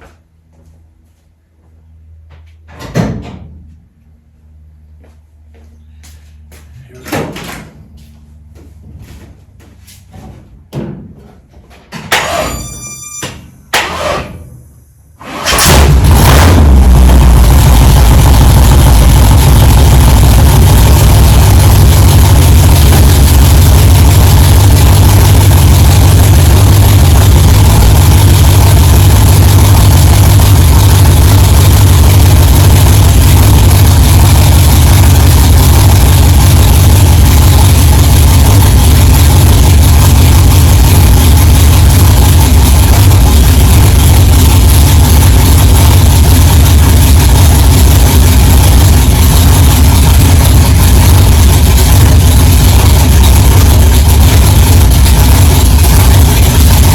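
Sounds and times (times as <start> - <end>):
car engine idling: 15.6 - 56.9.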